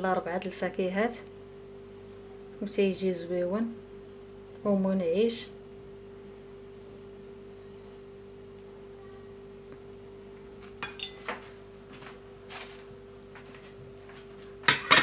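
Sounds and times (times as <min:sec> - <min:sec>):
faint steady hum: 0:00.0 - 0:15.0
knife and dishes clinking: 0:10.8 - 0:11.4, 0:14.6 - 0:15.0.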